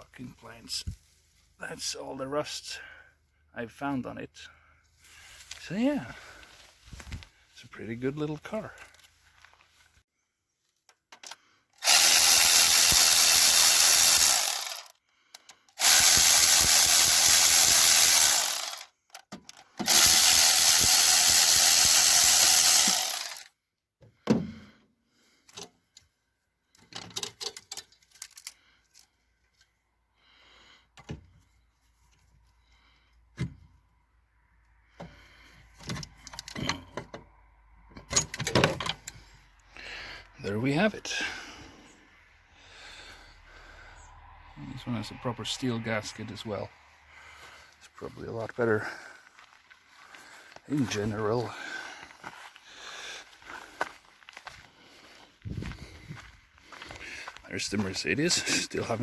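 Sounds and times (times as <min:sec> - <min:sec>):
handheld power tool running: 0:11.8 - 0:15.0, 0:15.7 - 0:18.9, 0:19.8 - 0:23.5.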